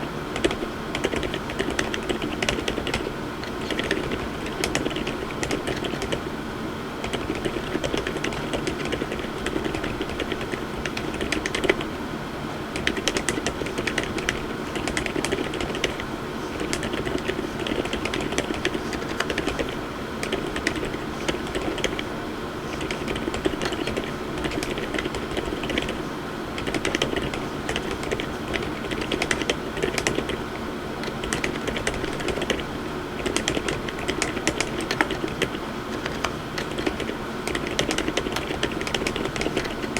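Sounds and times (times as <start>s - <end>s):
mechanical keyboard typing: 0.3s - 6.2s, 7.0s - 11.9s, 12.8s - 22.1s, 22.7s - 26.0s, 26.6s - 39.9s.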